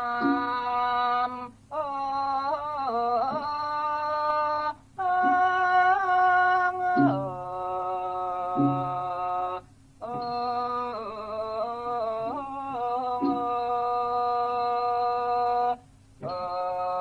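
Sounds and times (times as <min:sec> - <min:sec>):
man singing melismatic notes: 0:00.0 - 0:17.0
sparse low instrumental notes: 0:06.9 - 0:07.5, 0:08.6 - 0:09.2, 0:13.2 - 0:13.8.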